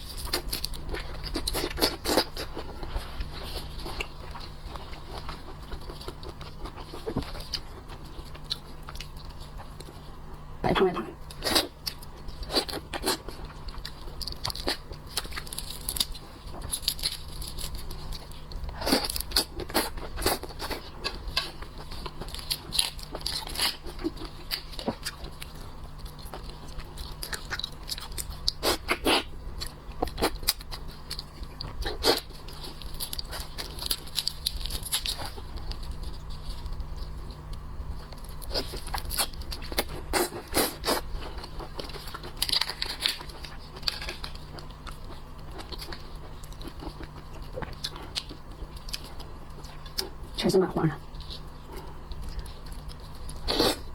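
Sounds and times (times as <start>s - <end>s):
steady low hum: 0.0s - 53.9s
seafood shell crunching: 11.3s - 50.2s.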